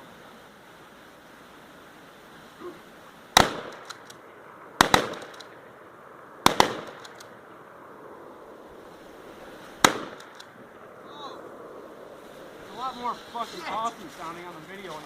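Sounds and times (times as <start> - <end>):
shotgun shots: 3.4 - 4.1, 4.8 - 5.6, 6.4 - 7.3, 9.8 - 10.5.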